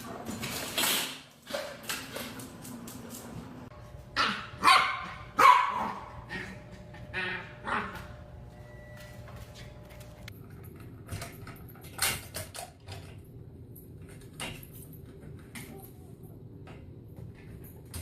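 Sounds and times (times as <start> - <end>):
low background hum: 1.4 - 18.0.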